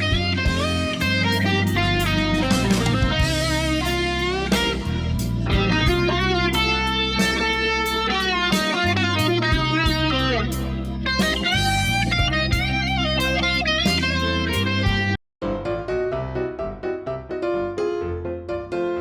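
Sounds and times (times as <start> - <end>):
bluesy rock music: 0.0 - 15.2.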